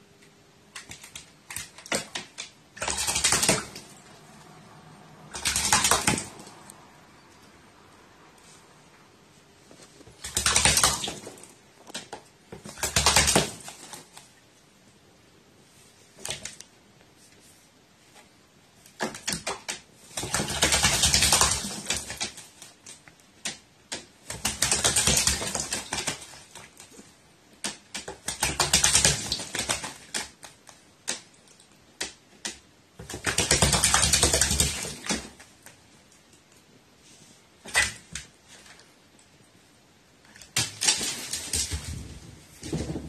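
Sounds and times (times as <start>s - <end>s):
bird wings splashing water: 5.3s - 6.5s, 10.2s - 12.1s, 19.0s - 22.7s, 24.0s - 26.9s, 27.6s - 30.5s.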